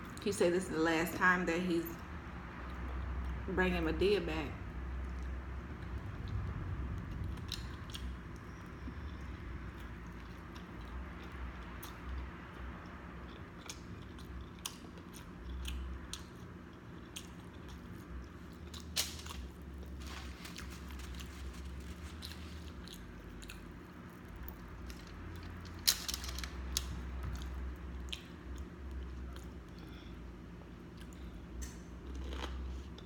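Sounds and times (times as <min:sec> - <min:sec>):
mouth chewing with clicks: 0:05.0 - 0:18.9, 0:26.8 - 0:29.9.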